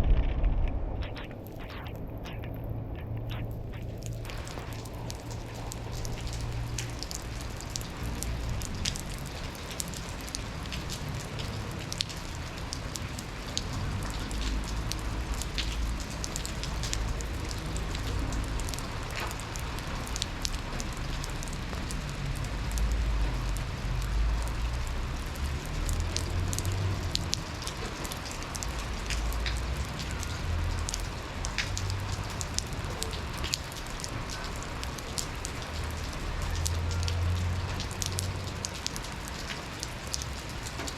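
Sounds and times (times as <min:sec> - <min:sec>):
low rumble: 0:00.0 - 0:08.9
rain falling: 0:00.0 - 0:40.9
raindrops ticking on hard surfaces: 0:00.0 - 0:40.9.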